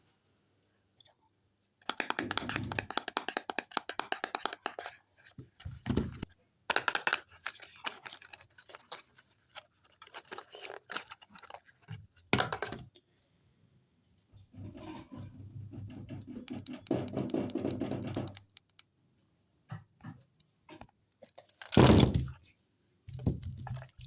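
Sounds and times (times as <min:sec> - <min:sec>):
small plastic clicks and scrapes: 0:16.0 - 0:18.9.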